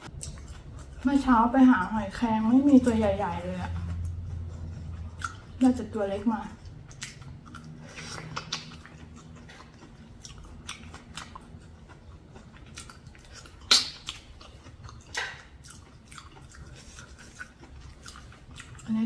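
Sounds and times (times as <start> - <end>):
person biting and chewing: 0.0 - 1.0, 6.6 - 18.9.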